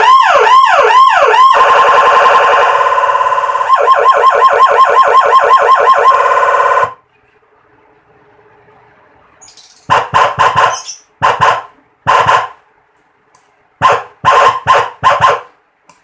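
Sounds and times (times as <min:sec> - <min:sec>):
electronic siren blasts: 0:00.0 - 0:07.0, 0:09.9 - 0:12.6, 0:13.8 - 0:15.5.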